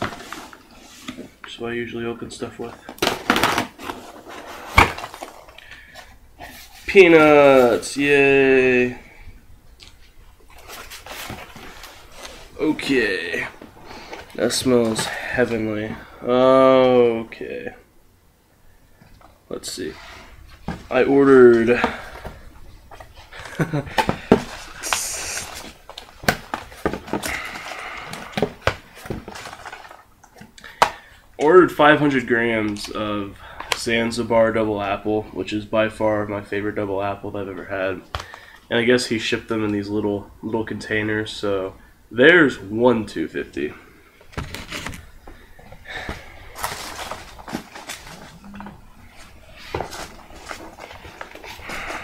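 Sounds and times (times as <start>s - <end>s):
packaging rustling and crinkling: 0.0s - 1.6s, 2.6s - 7.0s, 9.9s - 16.0s, 20.4s - 30.9s, 44.2s - 52.0s
packing material rustling: 23.0s - 30.2s, 44.2s - 45.2s, 45.9s - 52.0s.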